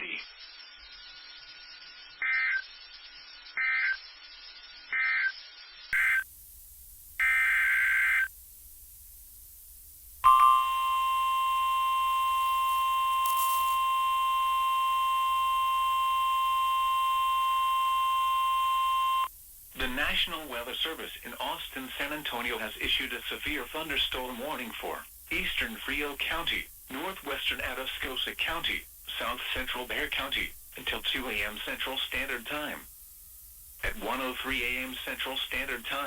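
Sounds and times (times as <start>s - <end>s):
buzzy digital tone bursts: 0.0s - 6.3s
steady alarm tone: 10.2s - 19.3s.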